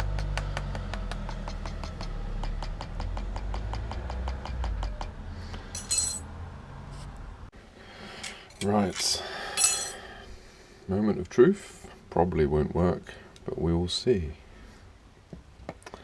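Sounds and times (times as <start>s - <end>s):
short metal clink: 5.8s - 6.2s, 9.6s - 10.0s.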